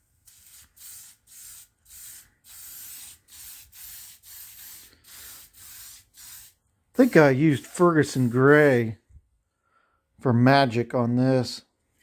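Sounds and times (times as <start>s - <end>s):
spray can hissing: 0.2s - 8.8s.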